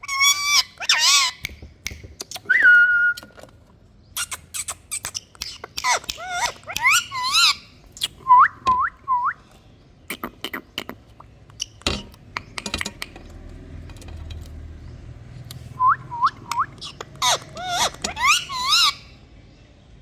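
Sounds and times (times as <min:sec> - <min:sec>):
parrot squawking: 0:00.0 - 0:01.5, 0:04.2 - 0:09.0, 0:15.8 - 0:19.2.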